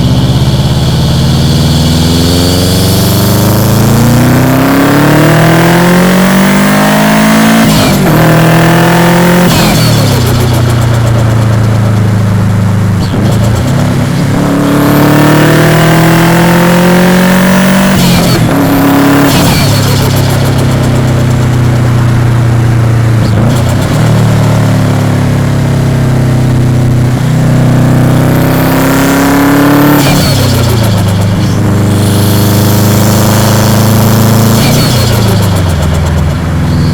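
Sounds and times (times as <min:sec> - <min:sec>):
car engine revving: 0:00.0 - 0:36.9
turbo flutter: 0:09.4 - 0:14.5, 0:17.9 - 0:24.7, 0:29.8 - 0:36.9.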